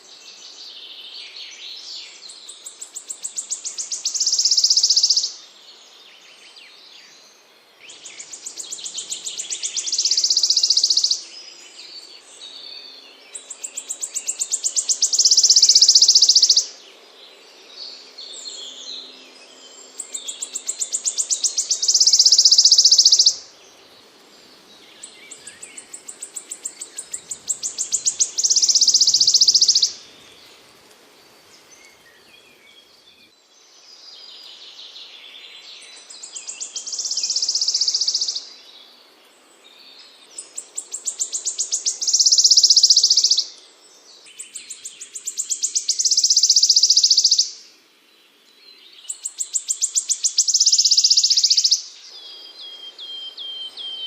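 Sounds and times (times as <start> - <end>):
songbird ticking and buzzing trill: 2.1 - 5.5, 7.9 - 16.8, 19.8 - 33.1, 36.0 - 39.2, 39.9 - 47.6, 48.4 - 52.5.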